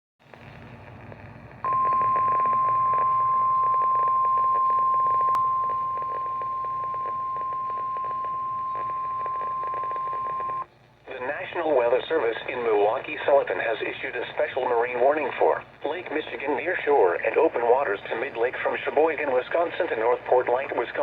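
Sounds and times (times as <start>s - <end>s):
receiver static: 0.2s - 21.0s
loud steady alarm beep: 1.7s - 10.6s.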